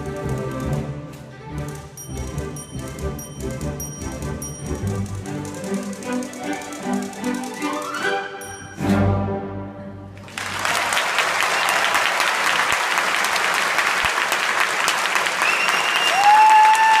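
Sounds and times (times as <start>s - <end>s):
typewriter bell ringing: 1.7s - 8.8s
audience applause: 10.2s - 17.0s.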